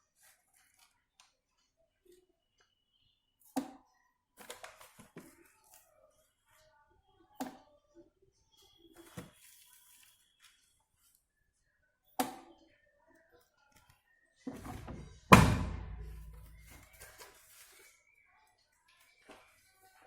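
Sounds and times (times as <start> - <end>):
heavy thunk with low rumble: 14.6 - 16.7.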